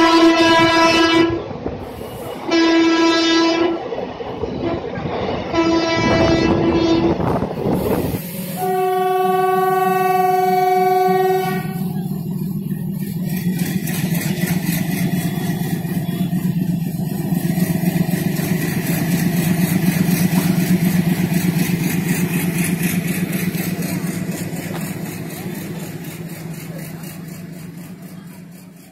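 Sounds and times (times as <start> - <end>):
train horn blast: 0.0 - 1.5, 2.4 - 3.8, 4.6 - 7.4, 8.6 - 12.0, 14.5 - 16.7
train rumbling: 0.0 - 28.9.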